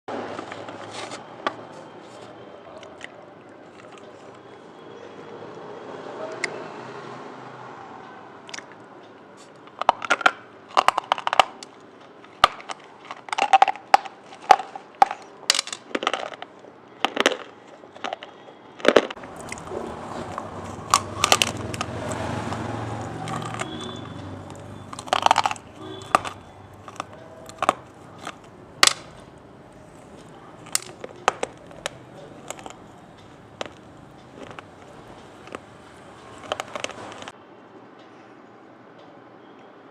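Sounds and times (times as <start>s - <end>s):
crunchy food chewing: 15.9s - 37.3s.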